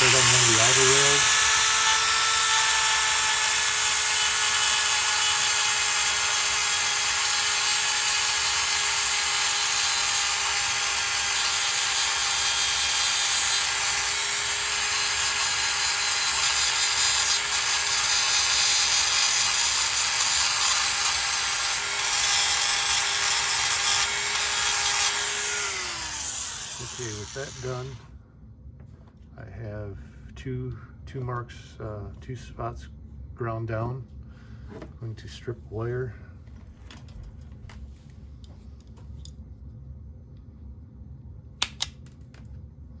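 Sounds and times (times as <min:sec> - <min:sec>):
rotary tool grinding metal: 0:00.0 - 0:28.1.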